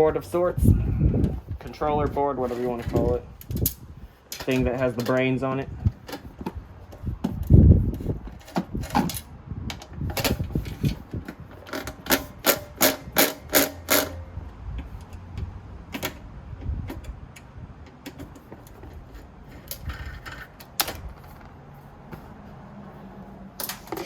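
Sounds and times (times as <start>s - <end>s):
clicks of metal and plastic parts: 2.7s - 7.5s, 8.3s - 14.2s, 23.6s - 24.0s.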